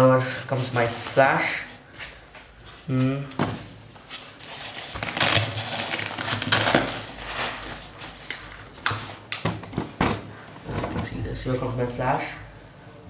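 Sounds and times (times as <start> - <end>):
backpack fabric rustling: 1.8 - 11.0.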